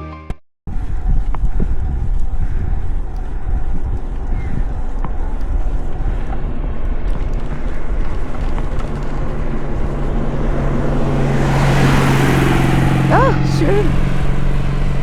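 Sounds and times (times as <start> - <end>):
bicycle rolling: 0.7 - 13.2
wind: 0.7 - 15.0
car engine hum: 0.8 - 15.0.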